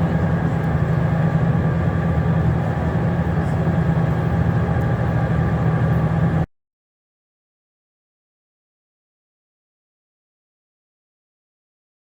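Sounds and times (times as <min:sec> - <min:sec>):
low engine drone: 0:00.0 - 0:06.5.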